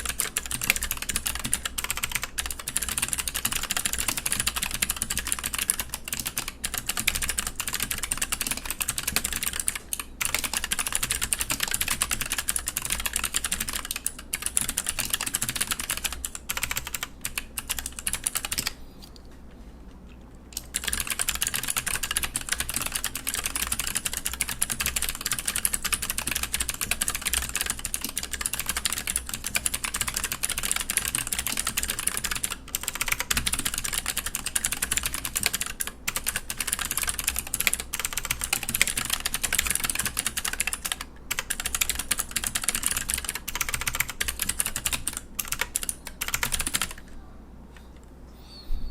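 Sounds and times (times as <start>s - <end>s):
fast mechanical keyboard typing: 0.0s - 18.8s, 20.6s - 47.0s.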